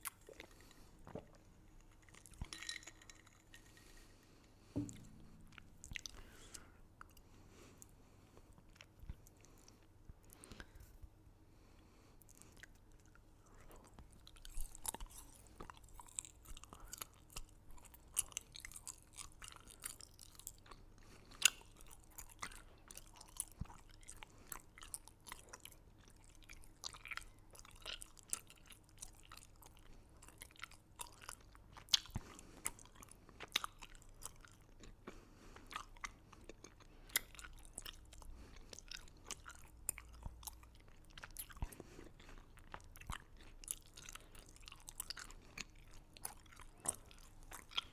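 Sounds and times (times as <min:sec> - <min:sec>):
person crunching hard candy: 0:00.0 - 0:04.2.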